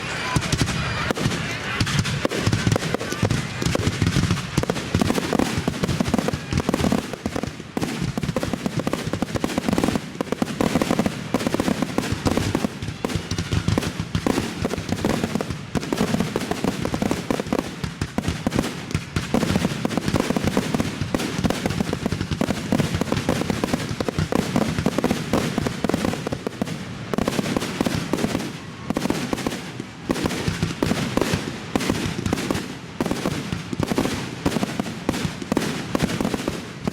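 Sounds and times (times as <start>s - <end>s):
fireworks bangs: 0.0s - 36.9s.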